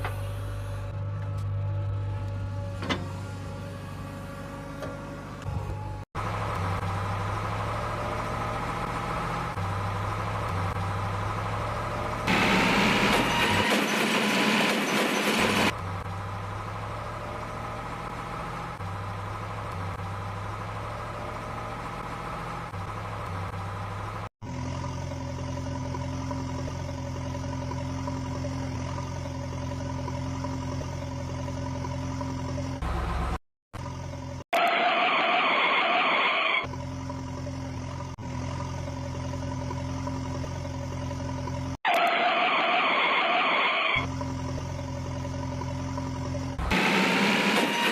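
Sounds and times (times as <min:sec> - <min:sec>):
heavy engine idling: 0:00.0 - 0:34.4
steady engine hum: 0:00.0 - 0:34.5, 0:36.6 - 0:41.8, 0:44.0 - 0:47.9
harsh rising whine: 0:05.3 - 0:47.9.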